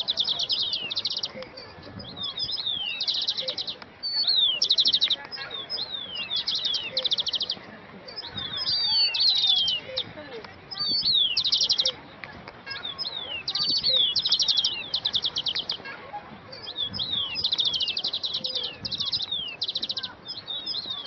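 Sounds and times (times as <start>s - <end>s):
songbirds chirping and trilling: 0.0s - 21.0s
falling whistled bird notes: 8.2s - 10.0s.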